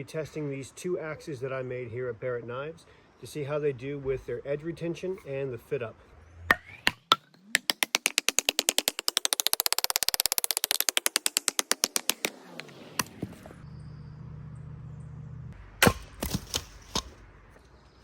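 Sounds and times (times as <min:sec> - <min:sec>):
rapid clicking: 0:07.6 - 0:12.3
low steady hum: 0:13.5 - 0:18.0
axe chopping wood: 0:15.8 - 0:17.2.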